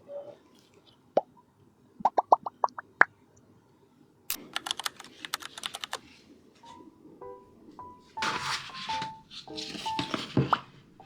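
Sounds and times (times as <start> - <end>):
mechanical keyboard typing: 4.3 - 6.0.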